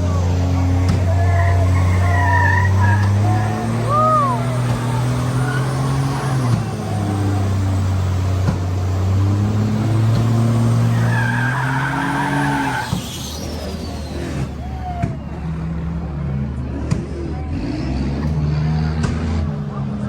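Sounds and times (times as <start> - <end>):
car engine revving high: 0.0 - 14.6
tyres squealing: 0.0 - 15.4.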